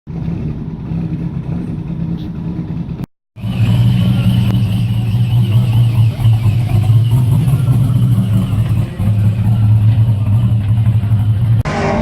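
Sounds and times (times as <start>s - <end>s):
car engine running hard: 0.1s - 12.0s
wavering high tone: 11.6s - 12.0s.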